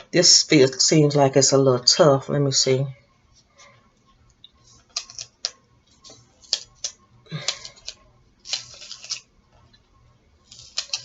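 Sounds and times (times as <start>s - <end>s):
knife cutting green onion: 10.5s - 11.0s.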